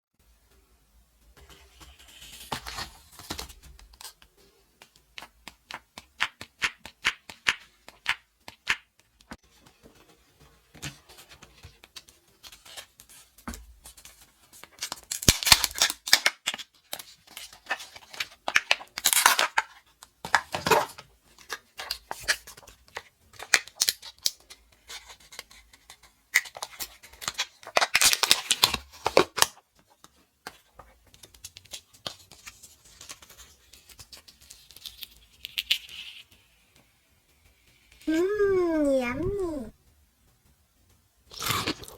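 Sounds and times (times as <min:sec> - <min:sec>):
candy wrappers crinkling: 0:14.6 - 0:29.6, 0:31.2 - 0:36.7.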